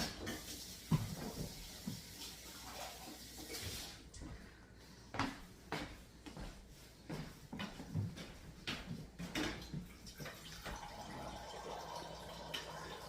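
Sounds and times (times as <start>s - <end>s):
water running from a tap: 0.0s - 4.2s, 9.7s - 13.0s.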